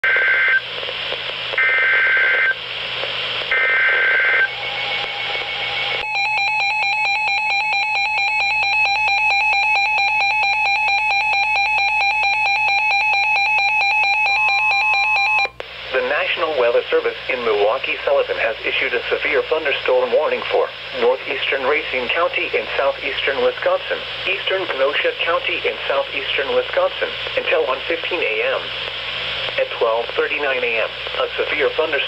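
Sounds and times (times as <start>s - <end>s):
radio static: 0.0s - 6.0s, 15.6s - 32.0s
data tone bursts: 3.5s - 9.8s
long steady alert tone: 3.5s - 15.5s.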